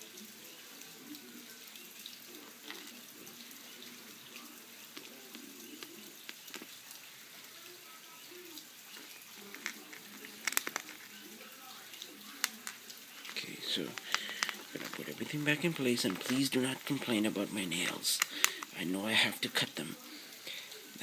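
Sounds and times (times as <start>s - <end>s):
steady hiss: 0.0s - 21.0s
plastic keyboard parts clicking: 9.4s - 11.1s, 13.8s - 17.2s, 18.1s - 18.8s.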